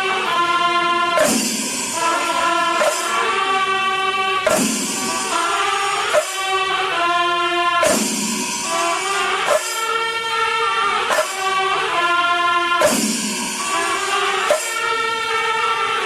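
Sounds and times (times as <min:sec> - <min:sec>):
percussive beat: 0:01.2 - 0:03.3, 0:04.5 - 0:06.5, 0:07.8 - 0:10.0, 0:11.1 - 0:11.6, 0:12.8 - 0:14.9.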